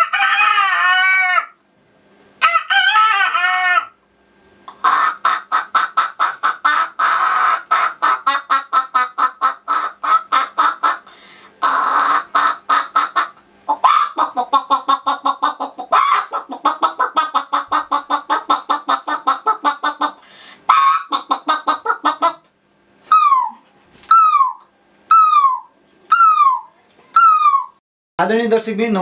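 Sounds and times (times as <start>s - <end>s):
boy imitating clucking squawks: 4.7s - 22.4s, 23.1s - 27.8s.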